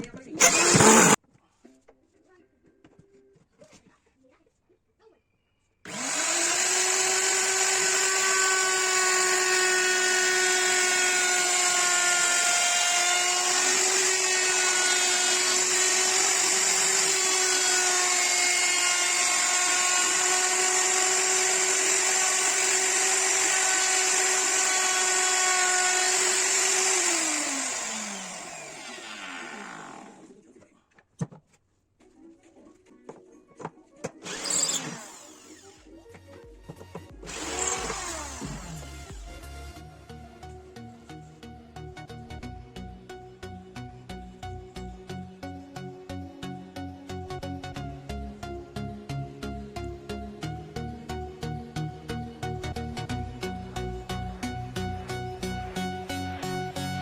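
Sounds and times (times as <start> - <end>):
electric power tool running: 0.4 - 1.2, 5.9 - 30.3, 34.2 - 35.8, 37.2 - 39.6.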